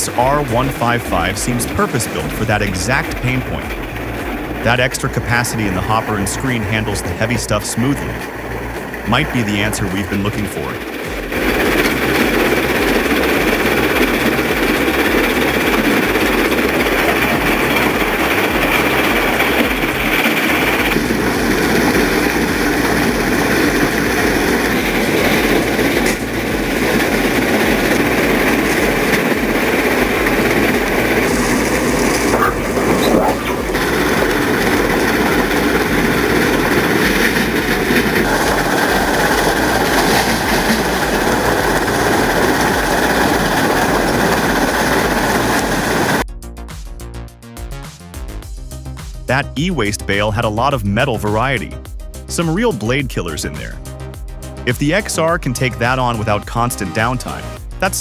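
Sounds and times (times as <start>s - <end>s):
heavy machinery grinding and rumbling: 0.0s - 46.2s.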